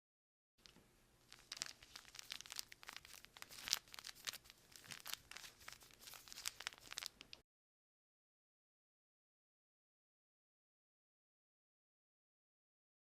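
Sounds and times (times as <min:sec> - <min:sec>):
crumpling crinkling crackles: 0:00.6 - 0:07.4.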